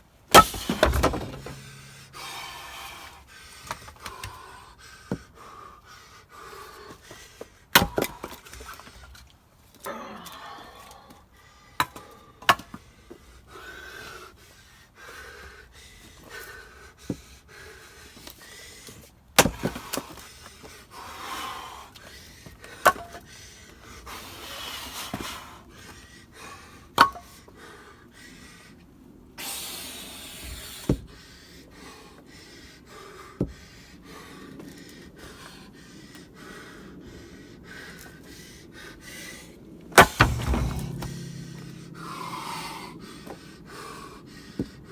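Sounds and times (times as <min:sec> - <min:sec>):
firewood splitting knocks and cracks: 0:00.4 - 0:02.1, 0:40.0 - 0:41.9.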